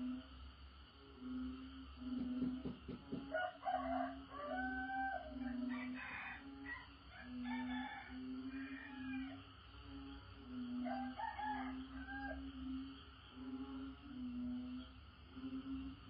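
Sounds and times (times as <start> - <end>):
frogs calling: 0.0 - 16.0
rooster crowing: 2.9 - 9.4, 10.8 - 12.6.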